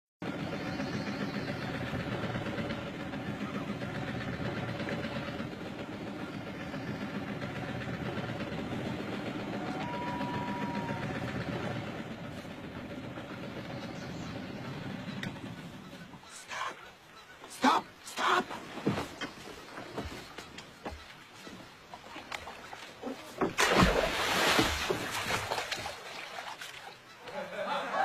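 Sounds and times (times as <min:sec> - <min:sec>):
engine running: 0:00.2 - 0:17.1.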